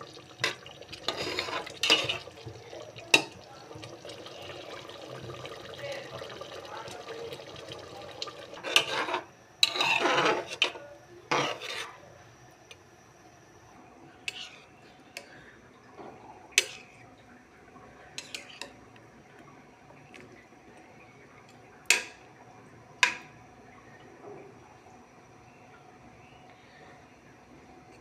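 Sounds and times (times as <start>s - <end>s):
metal spoon scraping a pot: 0.4s - 2.3s, 8.6s - 12.0s, 14.3s - 14.7s
utensils clinking against pot: 0.4s - 2.4s, 8.6s - 11.9s.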